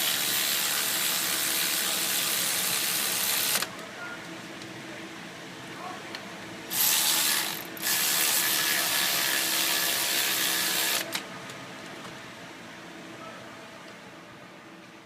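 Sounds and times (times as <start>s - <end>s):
ratcheting tool spinning: 0.0s - 3.7s, 6.7s - 11.2s.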